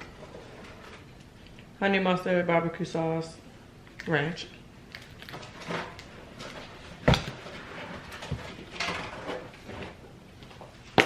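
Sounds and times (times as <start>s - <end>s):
grocery items rustling: 4.9s - 11.0s.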